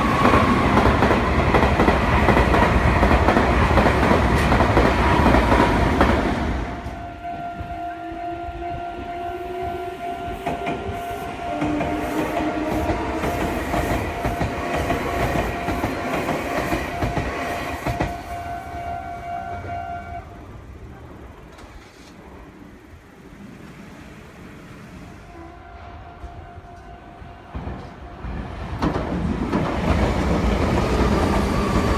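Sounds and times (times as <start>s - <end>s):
train wheels clacking on rails: 0.0s - 7.0s, 10.1s - 18.6s, 26.2s - 31.9s.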